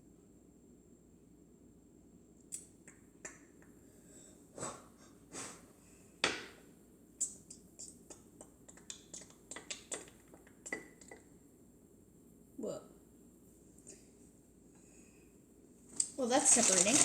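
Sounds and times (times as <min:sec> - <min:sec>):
kitchen items clicking and knocking: 0:16.4 - 0:17.0.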